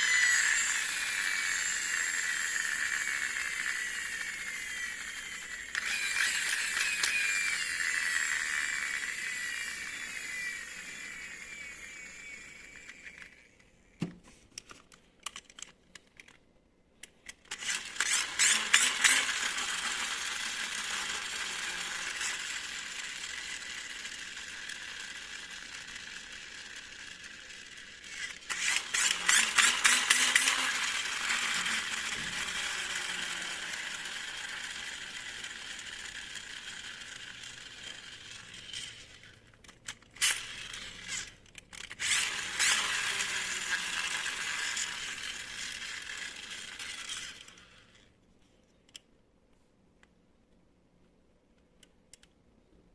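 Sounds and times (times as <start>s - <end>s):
toy car motor rattling: 0.0s - 13.7s, 14.8s - 16.4s, 17.1s - 48.2s
clicks: 12.8s - 17.7s, 48.6s - 52.8s.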